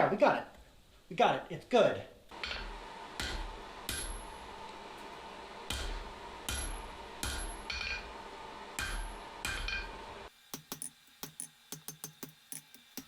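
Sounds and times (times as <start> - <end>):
hammer striking steel on anvil: 2.4 - 4.4, 5.7 - 8.2, 8.8 - 13.0.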